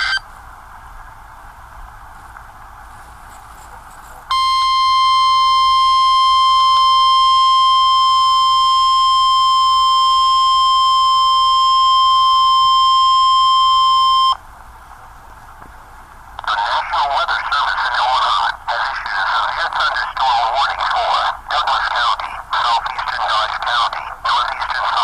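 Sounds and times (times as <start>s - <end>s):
high-pitched alert tone: 0.0s - 0.2s
faint radio hiss: 0.0s - 25.0s.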